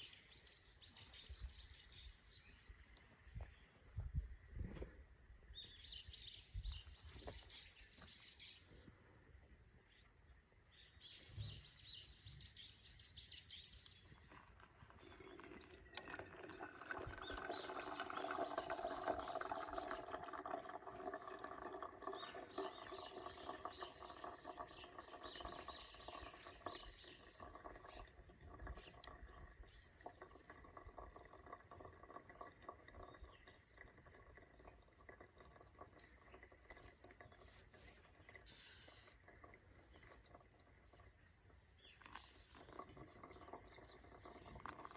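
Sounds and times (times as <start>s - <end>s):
birds chirping: 14.9s - 38.4s, 39.2s - 44.9s.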